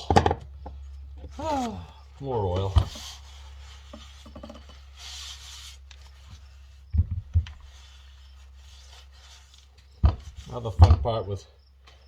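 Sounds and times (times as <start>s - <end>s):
dull thuds: 0.0s - 5.0s, 5.7s - 11.3s
metal parts rubbing and scraping: 2.8s - 6.9s.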